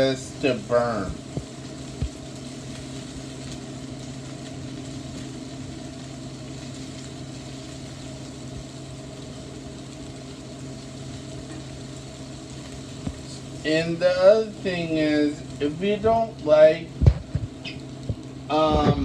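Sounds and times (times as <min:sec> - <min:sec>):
onions sizzling in a frying pan: 0:00.0 - 0:19.0.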